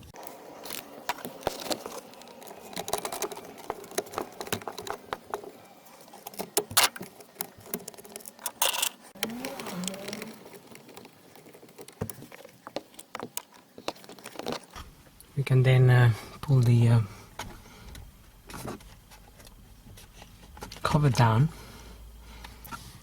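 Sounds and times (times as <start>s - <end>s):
hand tool clicks and plastic rattles: 0.7s - 14.8s.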